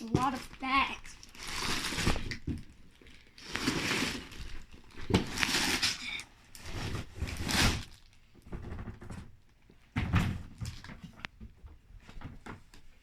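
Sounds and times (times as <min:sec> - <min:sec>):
plastic bags crinkling: 0:00.0 - 0:08.3.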